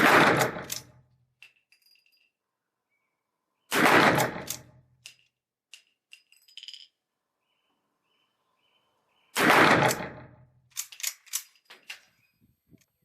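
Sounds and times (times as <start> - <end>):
rifle shot with ringing tail: 0.0 - 0.7, 3.7 - 4.6, 9.4 - 10.4
rifle lever action clicking: 10.7 - 12.0.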